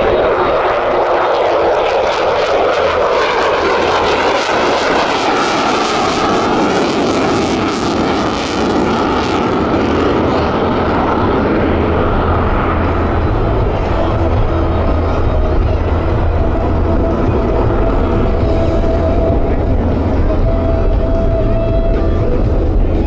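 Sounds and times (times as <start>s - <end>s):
loud jet engine roar: 0.0s - 23.0s.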